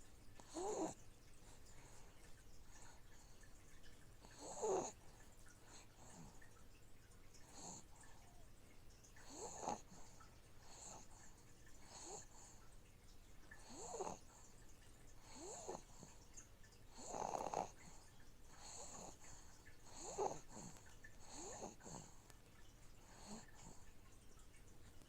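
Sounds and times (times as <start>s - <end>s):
aquarium filter hum: 0.0s - 25.0s
baby snoring: 0.4s - 1.0s, 4.2s - 5.0s, 7.4s - 8.3s, 9.2s - 10.1s, 13.6s - 14.3s, 15.2s - 16.1s, 16.9s - 18.0s, 18.6s - 22.2s, 23.0s - 23.8s.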